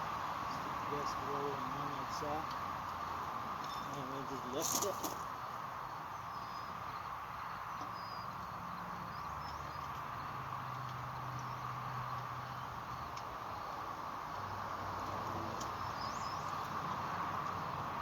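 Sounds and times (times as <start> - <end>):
outdoor background hiss: 0.0 - 18.0
faint bird chirps: 3.6 - 9.9
faint clicks: 13.1 - 13.3.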